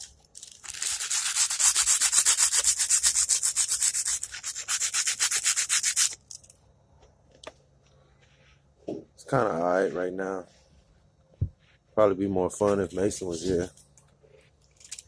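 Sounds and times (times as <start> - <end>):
sandpaper rubbing on metal: 0.7 - 6.2.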